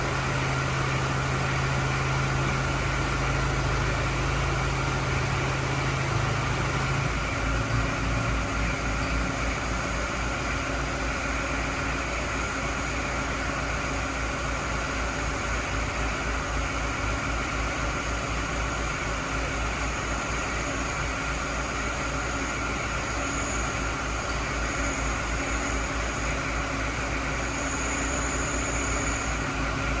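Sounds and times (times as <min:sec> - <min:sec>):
vehicle engine idling: 0:00.0 - 0:30.0
faint high whine: 0:22.2 - 0:30.0.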